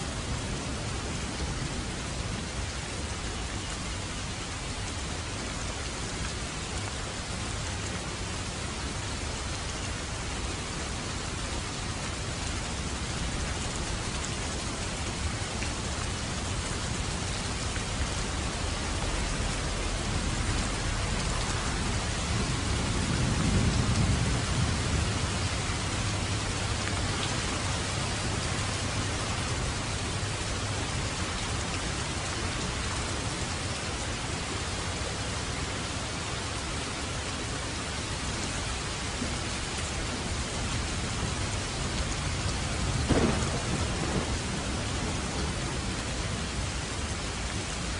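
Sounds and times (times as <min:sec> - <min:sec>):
steady rain: 0:00.0 - 0:47.9
low roll of thunder: 0:19.2 - 0:26.8, 0:42.8 - 0:46.6.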